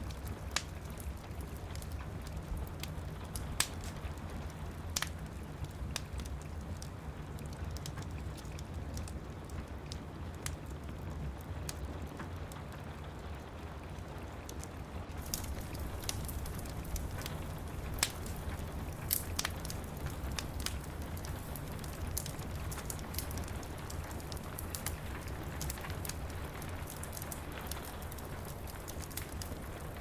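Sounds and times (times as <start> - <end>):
rain pattering on window glass: 0.0 - 30.0
wood fire crackling: 0.0 - 30.0.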